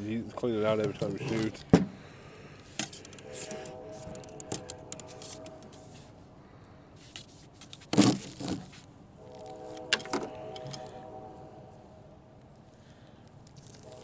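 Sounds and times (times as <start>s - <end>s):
metal gun parts clicking: 2.8s - 5.8s.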